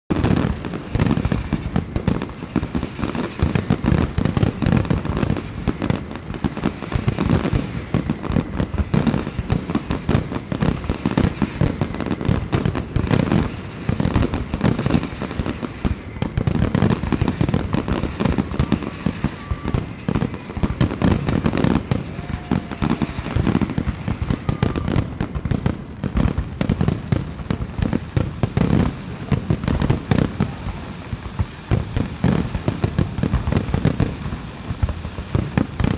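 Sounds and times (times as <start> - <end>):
fireworks bursting and crackling: 0.1 - 35.9
heavy booms and rapid bangs: 16.2 - 35.9.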